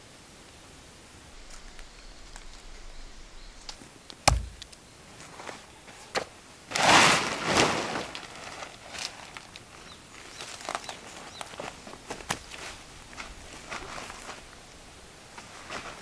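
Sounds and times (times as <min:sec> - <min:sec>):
small click: 0:03.7 - 0:04.8
sharp heavy knock: 0:04.3 - 0:04.7.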